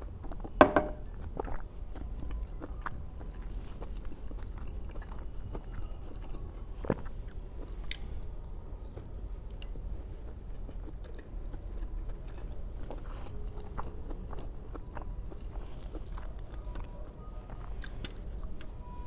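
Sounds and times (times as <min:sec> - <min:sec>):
person chewing: 0:09.0 - 0:18.8.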